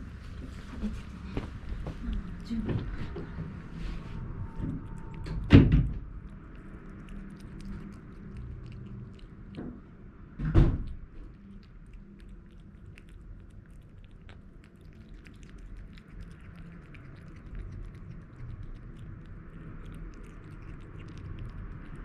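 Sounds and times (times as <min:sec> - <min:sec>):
faint clicks and ticks: 0:04.4 - 0:09.8, 0:10.8 - 0:22.0.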